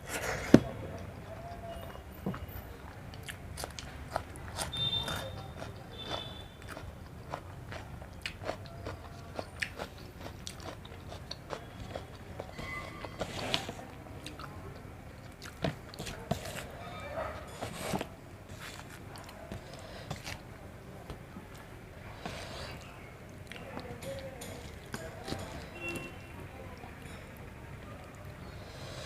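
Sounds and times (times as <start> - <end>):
person chewing food: 3.1 - 20.5.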